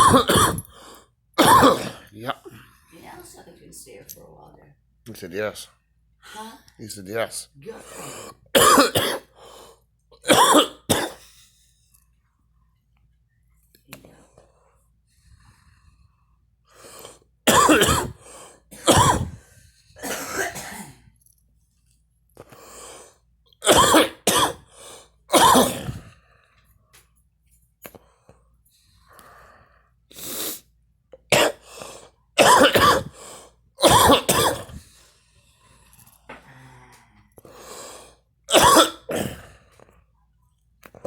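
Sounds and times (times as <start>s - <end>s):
woman coughing hard: 0.0s - 0.7s, 1.4s - 2.1s, 7.7s - 9.4s, 10.2s - 11.2s, 17.5s - 19.4s, 20.0s - 21.0s, 23.6s - 24.7s, 25.3s - 26.1s, 31.3s - 31.6s, 32.4s - 33.2s, 33.8s - 34.8s, 38.5s - 39.5s
breaths and throat sounds: 22.4s - 26.6s, 32.8s - 38.2s.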